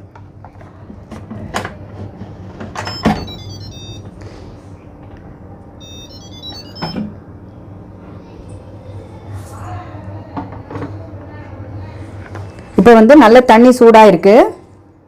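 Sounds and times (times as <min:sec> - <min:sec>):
high electronic tones: 0:02.8 - 0:04.2, 0:05.8 - 0:07.1.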